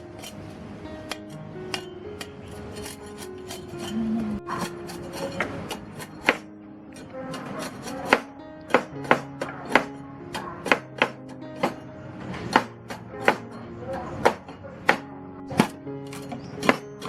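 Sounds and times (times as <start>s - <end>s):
knife chopping on cutting board: 7.4s - 11.8s.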